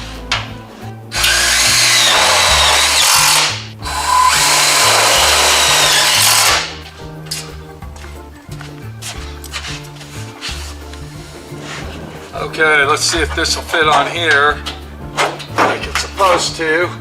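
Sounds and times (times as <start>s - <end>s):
background music: 0.0s - 17.0s
power drill driving screws: 1.1s - 6.7s.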